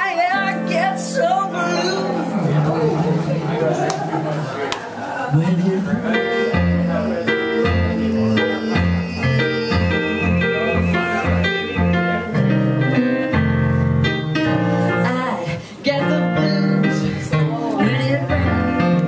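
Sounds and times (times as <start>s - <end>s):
electric keyboard chords: 0.0s - 19.0s
bass line: 5.3s - 15.2s.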